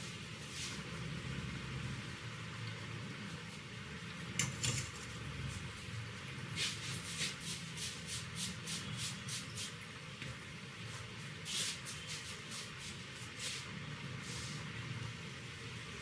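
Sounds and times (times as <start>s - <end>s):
hands rubbing head and hair: 0.0s - 0.9s, 6.5s - 9.8s, 10.8s - 14.7s.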